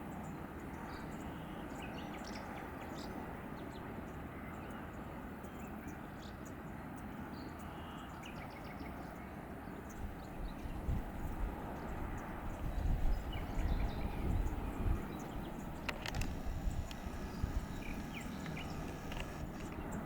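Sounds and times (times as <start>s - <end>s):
small birds chirping: 0.1s - 20.0s
wind gusting on microphone: 9.9s - 20.0s
sharp clicks: 15.2s - 20.0s.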